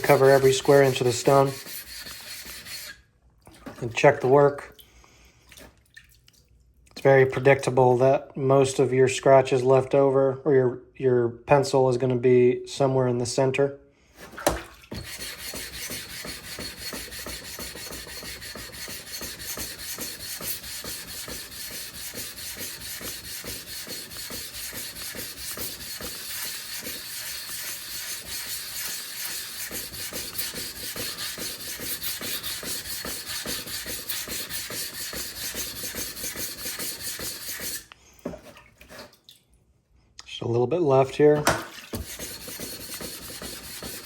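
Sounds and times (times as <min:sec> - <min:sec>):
plate rasping on wet whetstone: 0:00.0 - 0:03.0, 0:14.9 - 0:37.9, 0:41.8 - 0:44.0.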